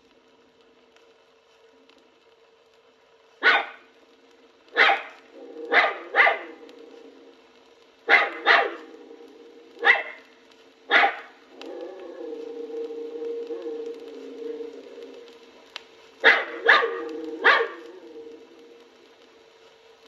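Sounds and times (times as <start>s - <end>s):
faint steady hum: 0.0s - 20.0s
dog barking: 3.4s - 3.9s, 4.8s - 6.6s, 8.1s - 9.0s, 9.8s - 10.2s, 10.9s - 11.8s, 16.2s - 17.9s
dog whining: 16.2s - 18.4s.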